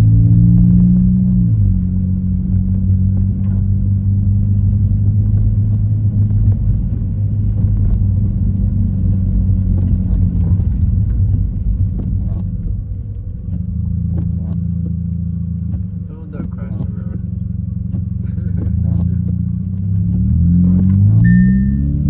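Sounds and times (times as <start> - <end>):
car rumble from inside cabin: 0.0 - 22.0.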